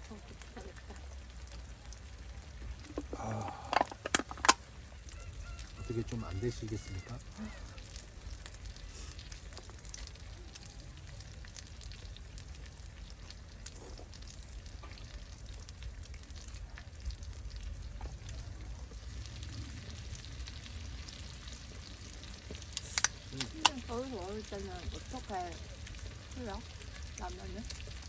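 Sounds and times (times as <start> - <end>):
food frying sizzle: 0.0 - 28.0.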